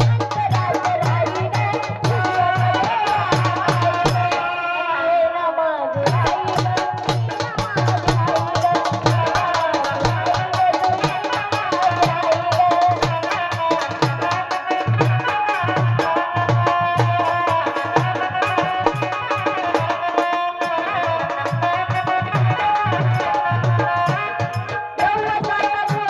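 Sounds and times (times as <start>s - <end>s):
hand drum beat: 0.0s - 4.4s, 6.0s - 20.0s.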